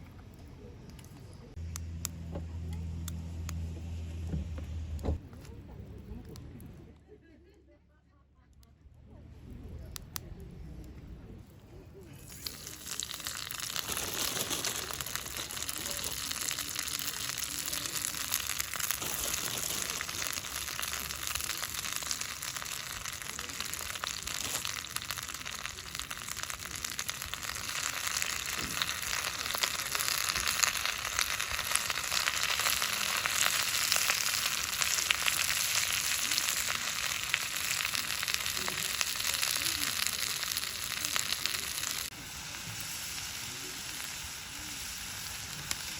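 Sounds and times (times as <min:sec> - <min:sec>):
pork sizzling in a skillet: 0:12.2 - 0:45.9.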